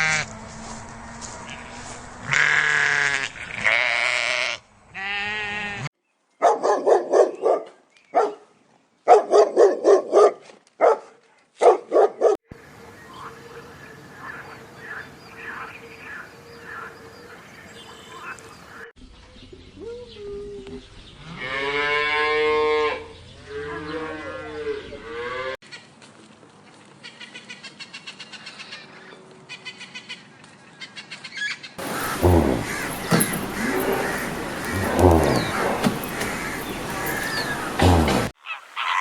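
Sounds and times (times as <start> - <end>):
cow mooing: 31.8 - 38.3
other animal calls: 31.8 - 39.0.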